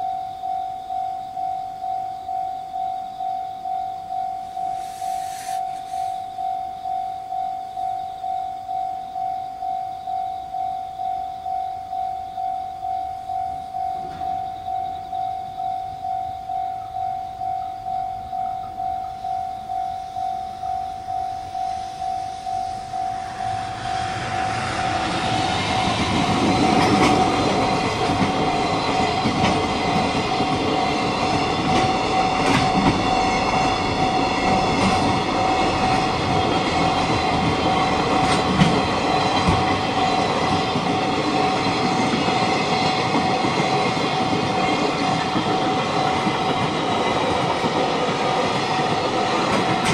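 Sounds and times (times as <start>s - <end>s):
level crossing bell ringing: 0.0s - 24.2s
train rumbling: 13.2s - 49.9s
wheel clatter over rail joints: 25.0s - 49.9s.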